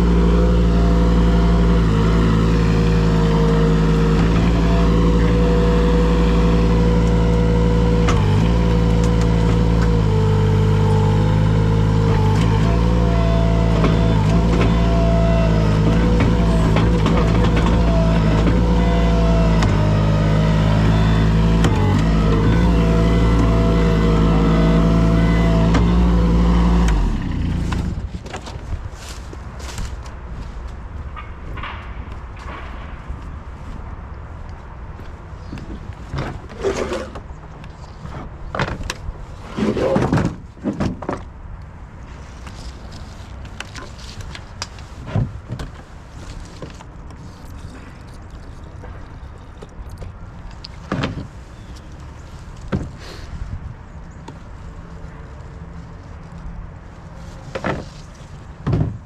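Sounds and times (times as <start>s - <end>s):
machine engine running: 0.0s - 28.0s.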